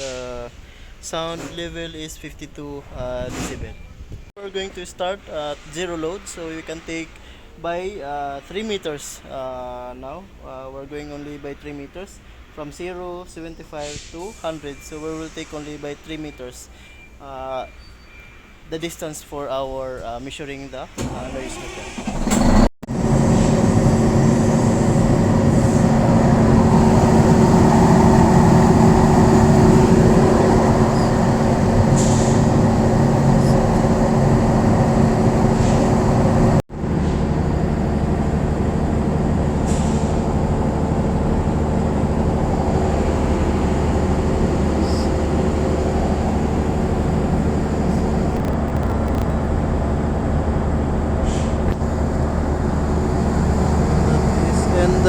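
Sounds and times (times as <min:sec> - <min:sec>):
generator humming: 0:21.0 - 0:55.0.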